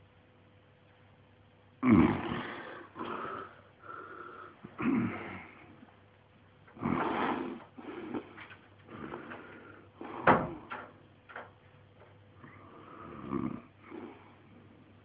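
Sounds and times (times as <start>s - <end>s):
man snoring loudly: 1.8s - 5.6s, 6.8s - 8.2s, 12.4s - 14.4s.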